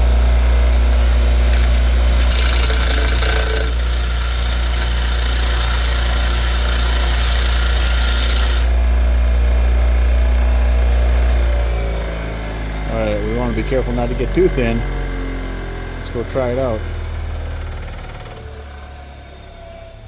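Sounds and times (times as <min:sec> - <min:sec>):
bench grinder motor hum: 0:00.0 - 0:09.2
metal grinding on wheel: 0:00.9 - 0:08.8.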